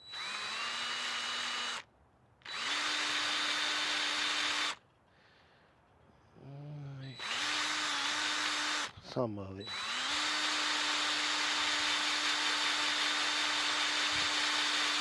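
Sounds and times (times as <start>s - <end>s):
drill wire brush on metal: 7.1s - 15.0s.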